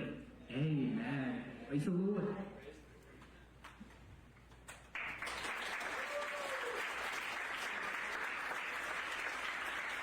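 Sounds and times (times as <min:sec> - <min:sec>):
congregation applauding: 0:04.5 - 0:10.0.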